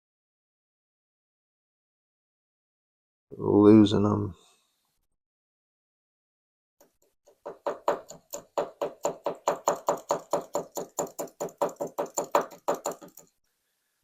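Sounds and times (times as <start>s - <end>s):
lock parts tapping on hard surface: 7.3s - 13.3s.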